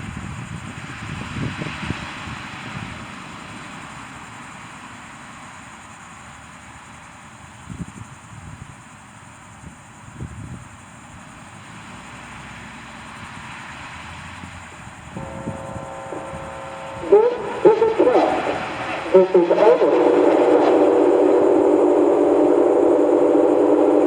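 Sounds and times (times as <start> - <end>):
distant warning siren drone: 15.0 - 24.0
wind buffeting microphone: 15.2 - 24.0.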